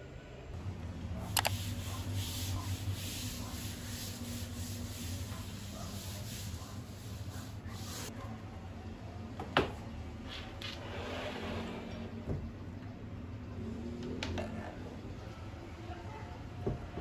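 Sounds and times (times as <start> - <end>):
rubbing and rustling handling noise: 1.1 - 8.1.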